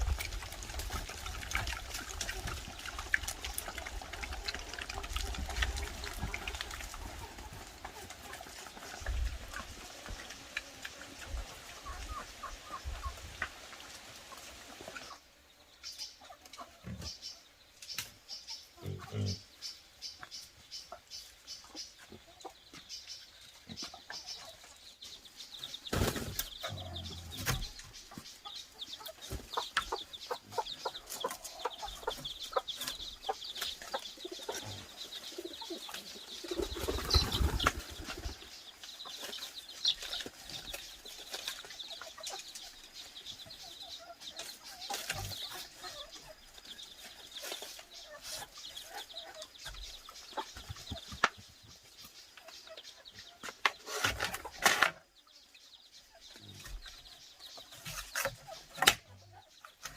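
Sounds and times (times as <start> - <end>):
chickens clucking: 0.0 - 59.9
wings flapping: 36.4 - 38.5.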